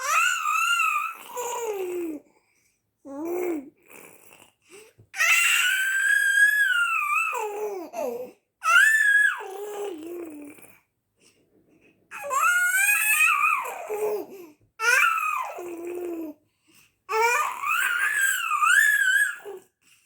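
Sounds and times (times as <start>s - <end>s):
baby squealing: 5.2s - 7.5s, 17.2s - 19.6s.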